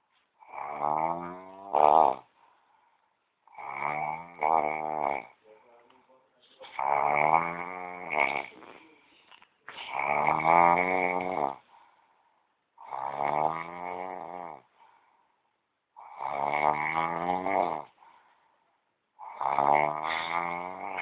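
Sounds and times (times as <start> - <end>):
person snoring: 0.4 - 2.4, 3.4 - 5.4, 6.7 - 9.0, 9.8 - 11.8, 12.8 - 14.8, 16.0 - 18.2, 19.2 - 21.0.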